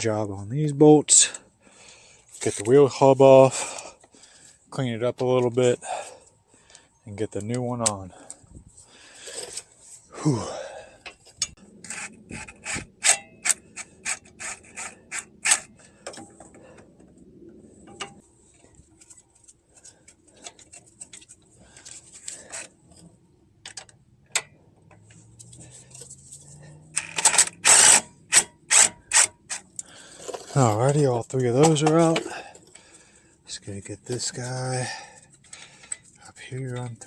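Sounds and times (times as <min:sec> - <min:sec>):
ratchet clicking: 0:11.4 - 0:15.7, 0:26.9 - 0:30.4.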